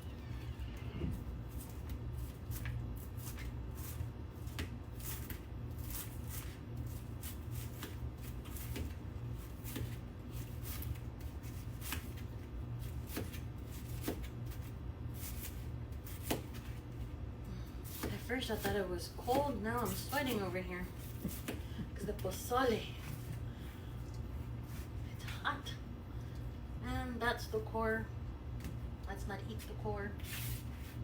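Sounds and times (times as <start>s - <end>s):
knife slicing cabbage: 1.5s - 17.0s, 17.8s - 23.4s.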